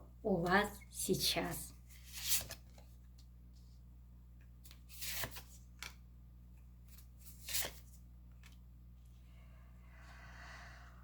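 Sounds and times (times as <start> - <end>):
faint steady hum: 0.0 - 11.0
cards swishing: 7.2 - 7.9.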